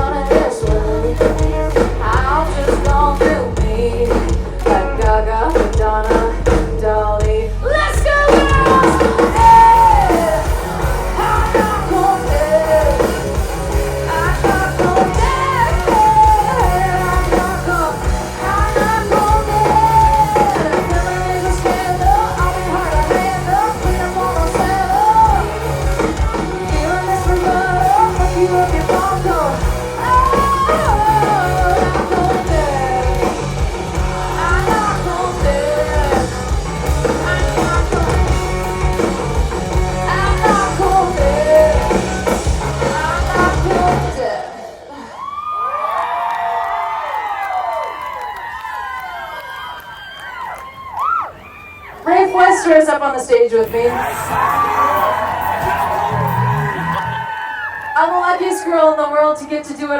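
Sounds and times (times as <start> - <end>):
bass: 0.0 - 44.8, 50.9 - 59.9
guitar: 0.0 - 45.1, 50.7 - 59.9
drums: 0.0 - 59.9
bending lead melody: 8.4 - 44.2, 53.6 - 57.3.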